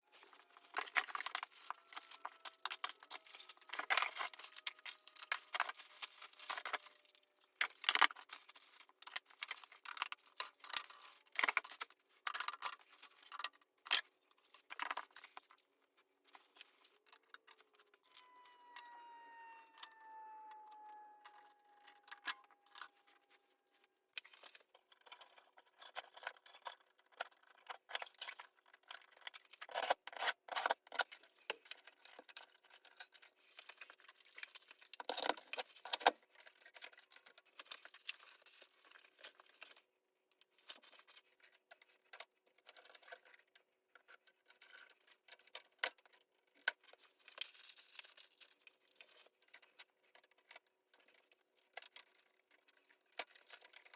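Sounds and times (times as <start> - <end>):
falling pitched whine: 17.7 - 23.8.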